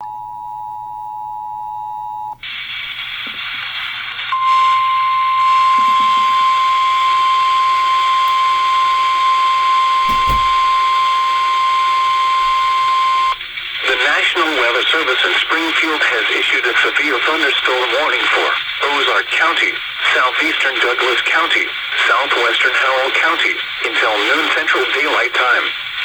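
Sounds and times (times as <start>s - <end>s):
radio static hiss: 2.4s - 6.3s, 10.1s - 11.1s, 12.3s - 26.0s
steady warning tone: 4.4s - 15.2s
low thump: 10.0s - 11.0s
two-tone alert signal: 10.1s - 10.9s.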